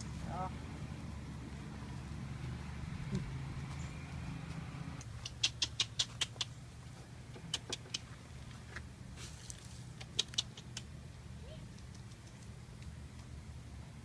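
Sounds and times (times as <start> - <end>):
person clicking tongue: 5.0 - 6.6, 7.4 - 8.0, 10.0 - 10.9.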